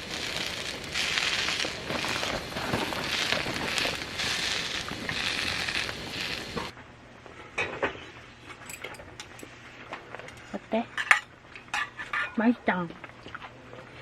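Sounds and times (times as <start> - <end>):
loud pulsing hiss: 0.0 - 6.7.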